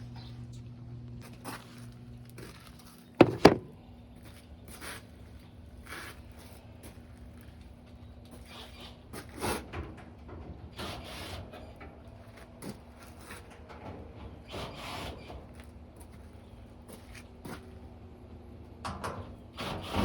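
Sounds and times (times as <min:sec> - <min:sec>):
dryer panels scraping and knocking: 0:03.2 - 0:03.8.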